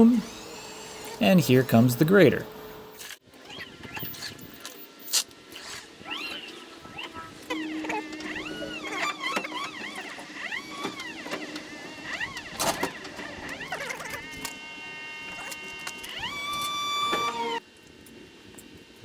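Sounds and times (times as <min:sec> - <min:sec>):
electric motor and hydraulics whining: 0:00.0 - 0:17.6.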